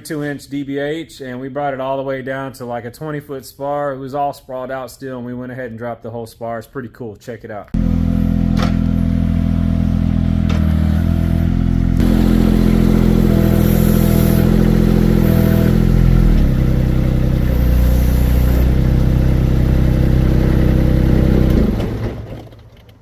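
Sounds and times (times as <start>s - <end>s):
droning chord music: 12.0s - 19.6s.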